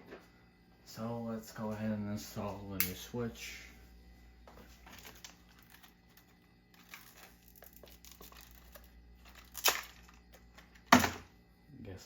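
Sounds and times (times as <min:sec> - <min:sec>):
plastic packaging crinkling: 0:04.7 - 0:11.1
plastic ripping: 0:04.9 - 0:11.1.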